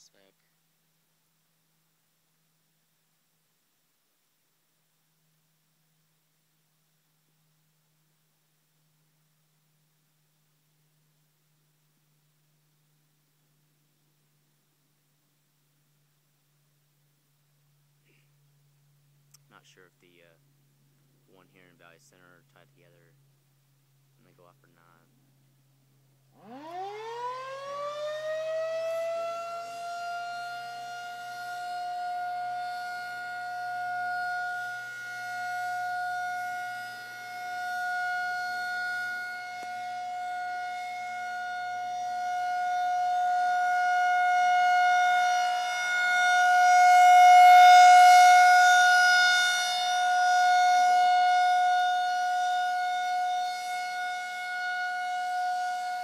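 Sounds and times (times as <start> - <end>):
tornado siren winding up: 26.3 - 56.0.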